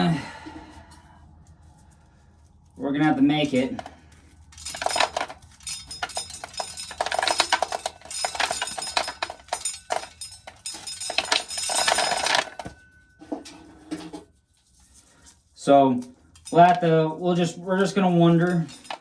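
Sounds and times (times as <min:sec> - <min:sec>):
corn kernels clattering: 0:03.0 - 0:13.0, 0:14.8 - 0:19.0.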